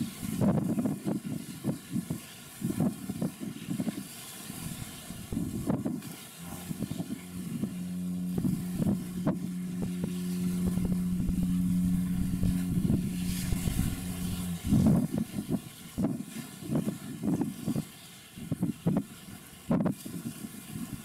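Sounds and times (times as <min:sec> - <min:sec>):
wind buffeting microphone: 0:00.0 - 0:21.0
ship's horn blast: 0:04.5 - 0:16.2.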